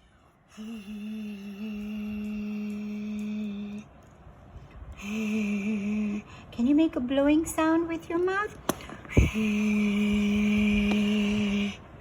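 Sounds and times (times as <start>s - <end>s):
woman humming a whooshing whooo: 0.5s - 3.9s, 5.0s - 6.3s, 9.1s - 11.9s.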